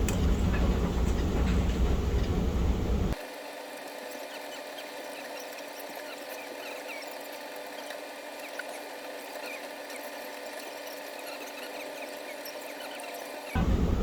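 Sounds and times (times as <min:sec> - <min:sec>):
faint steady hum: 0:00.0 - 0:03.2, 0:13.6 - 0:14.0.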